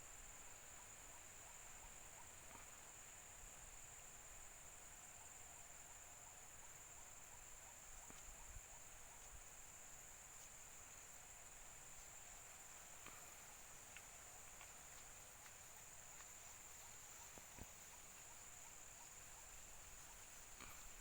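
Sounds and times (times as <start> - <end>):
soft ticks: 12.0 - 19.2.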